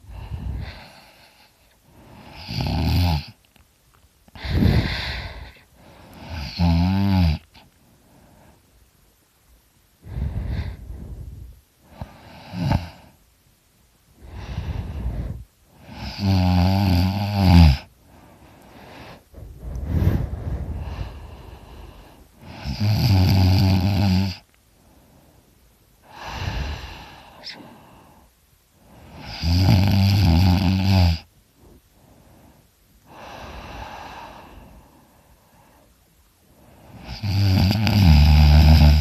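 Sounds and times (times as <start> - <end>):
person snoring loudly: 2.3 - 3.4, 6.2 - 7.5, 14.2 - 17.9, 22.4 - 24.4, 29.1 - 31.3, 37.0 - 39.0.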